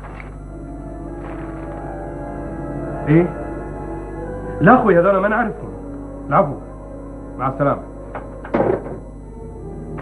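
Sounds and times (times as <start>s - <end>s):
dramatic background music: 0.0s - 10.0s.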